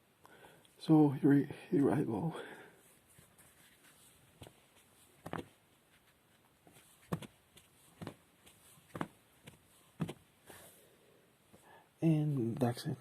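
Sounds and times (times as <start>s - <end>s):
back joints cracking: 4.3s - 10.4s.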